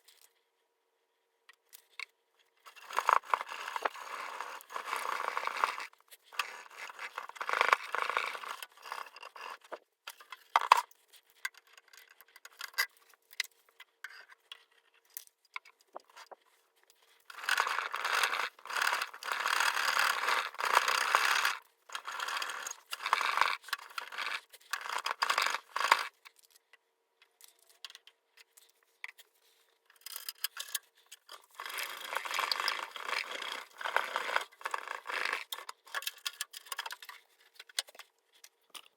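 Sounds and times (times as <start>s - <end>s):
scraping and scrubbing on steel case: 31.3s - 35.6s.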